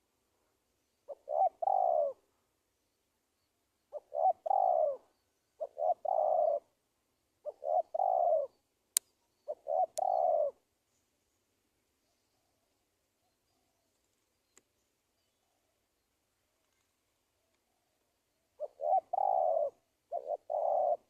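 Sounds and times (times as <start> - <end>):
dove cooing: 1.1 - 2.2, 3.9 - 6.8, 7.4 - 8.6, 9.4 - 10.6, 18.6 - 21.0.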